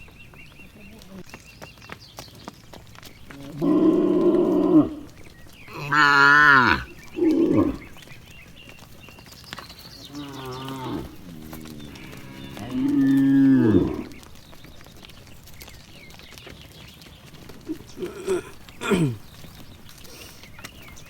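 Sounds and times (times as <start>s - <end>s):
cattle mooing: 3.1s - 8.6s, 10.0s - 15.6s, 17.4s - 21.0s.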